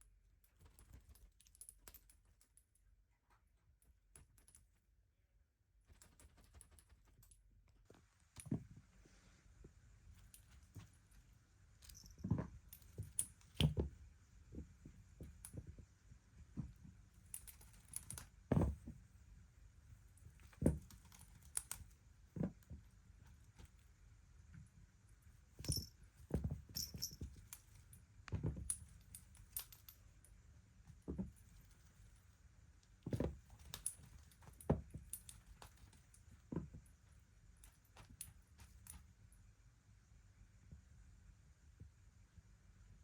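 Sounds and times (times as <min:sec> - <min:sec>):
light clicks and rattles: 0:25.5 - 0:39.1.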